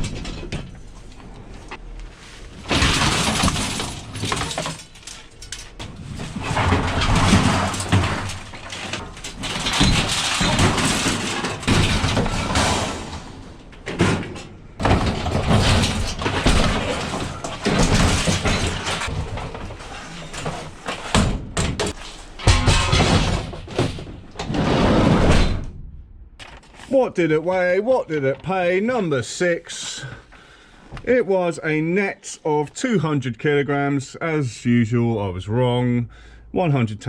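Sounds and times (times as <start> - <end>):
scrap iron clattering and crashing: 0.0 - 1.1, 2.5 - 25.7.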